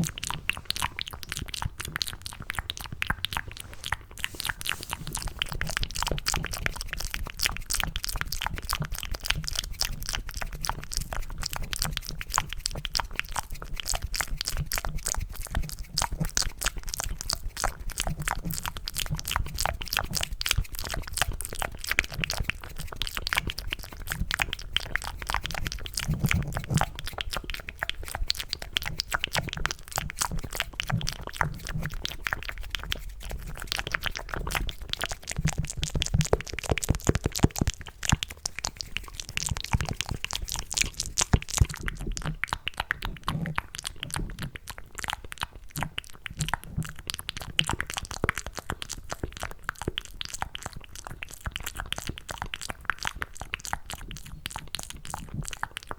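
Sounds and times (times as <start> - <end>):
wet mouth clicks and smacks: 0.0 - 55.9.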